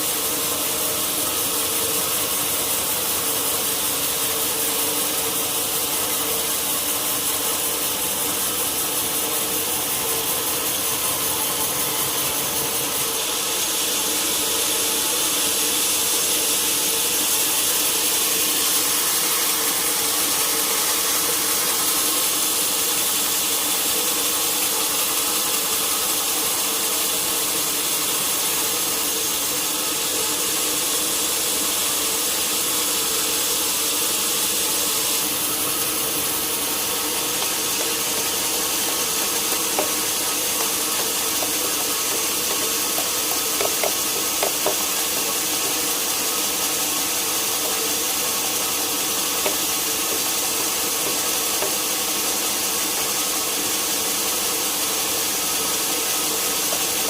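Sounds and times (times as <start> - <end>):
saw hissing through log: 0.0 - 57.0
sawmill saw drone: 0.0 - 57.0.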